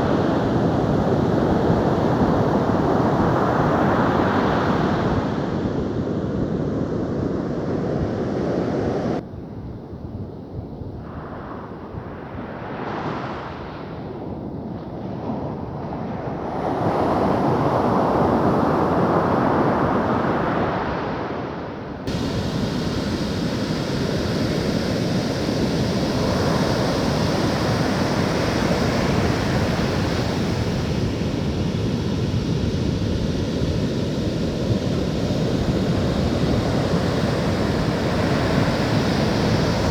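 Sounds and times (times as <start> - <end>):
wind on microphone: 0.0 - 39.9
ocean waves breaking: 22.1 - 39.9.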